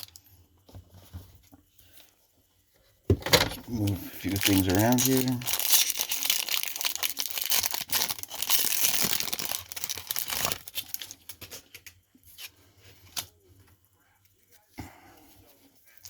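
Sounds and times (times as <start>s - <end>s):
plastic packaging crinkling and tearing: 0.0s - 0.3s, 3.7s - 12.5s.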